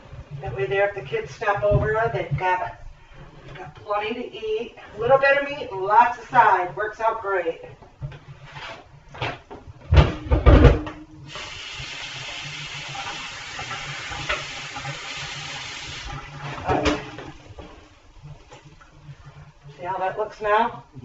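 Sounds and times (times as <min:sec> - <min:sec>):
water running: 0:00.3 - 0:07.5, 0:11.2 - 0:21.0
kitchenware knocks: 0:09.9 - 0:11.0.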